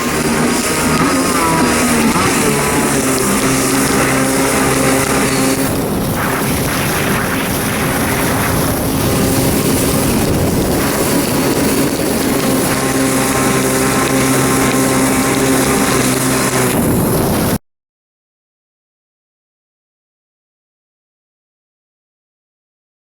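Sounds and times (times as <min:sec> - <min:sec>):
jet ski engine running: 0:00.0 - 0:17.6
water rushing and splashing: 0:00.0 - 0:17.6.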